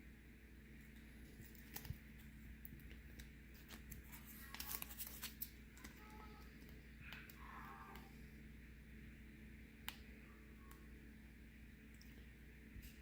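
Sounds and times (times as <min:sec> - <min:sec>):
stickers peeling crinkling: 0:00.9 - 0:08.1.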